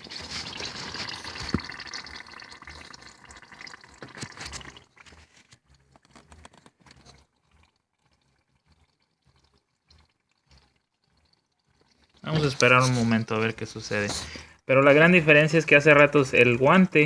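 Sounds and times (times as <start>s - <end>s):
smoke machine bubbling and hissing: 0.0s - 5.0s, 11.3s - 17.0s
small crackles: 0.0s - 14.6s.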